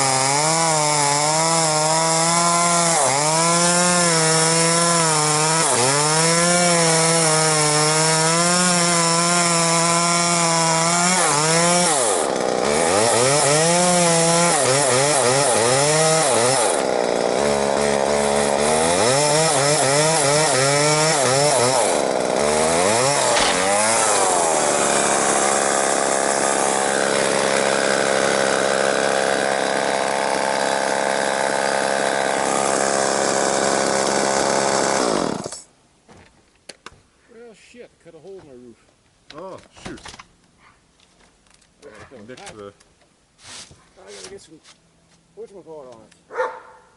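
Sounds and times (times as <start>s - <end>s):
chainsaw cutting wood: 0.0s - 35.7s.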